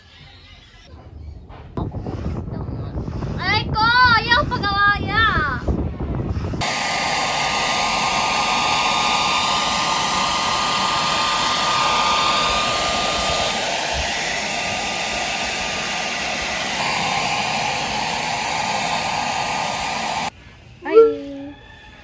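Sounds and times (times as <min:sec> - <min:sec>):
electric fan whining: 0:02.9 - 0:20.3.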